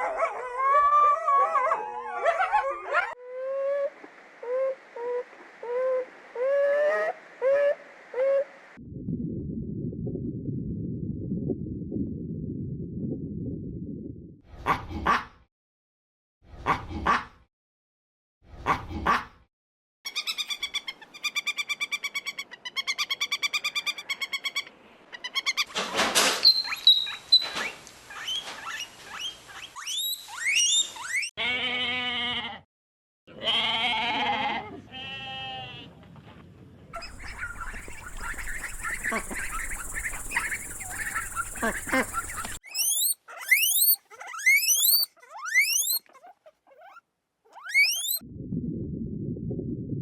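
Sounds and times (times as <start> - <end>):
rapid pulsed animal call: 37.0 - 46.0, 47.7 - 48.2
drawn-out pitched animal calls: 37.0 - 46.9
animal cries: 37.0 - 48.2
rising squeals: 47.6 - 48.2.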